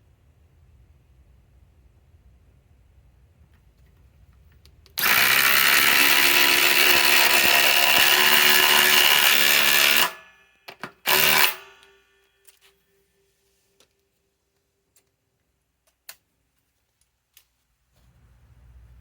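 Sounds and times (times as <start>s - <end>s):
impact driver hammering screw: 5.0s - 11.9s.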